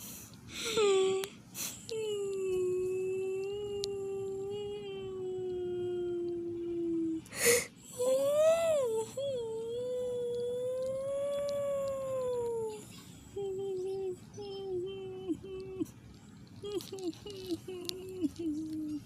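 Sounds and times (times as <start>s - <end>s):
puppy whining: 16.6s - 19.0s.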